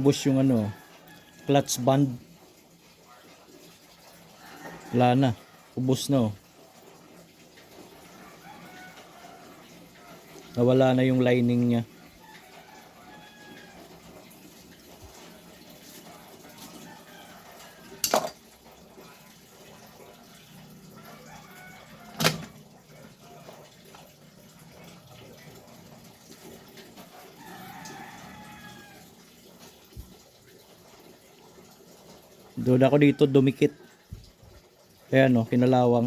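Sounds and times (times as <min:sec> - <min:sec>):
distant rooster crowing: 0:04.4 - 0:05.4, 0:08.1 - 0:10.2, 0:12.2 - 0:14.1, 0:16.1 - 0:18.3, 0:20.3 - 0:22.6, 0:27.2 - 0:29.2.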